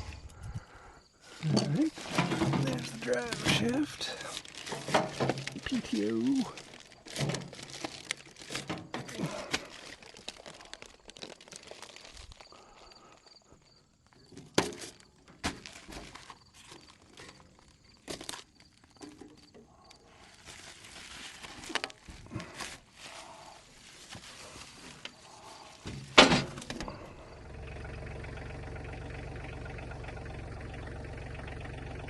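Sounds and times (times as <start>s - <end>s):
knocks and clunks of handling: 1.4s - 5.8s, 6.6s - 9.7s, 14.2s - 20.0s, 25.8s - 27.0s
packing material crinkling: 1.4s - 13.4s, 14.1s - 19.5s, 20.1s - 27.0s.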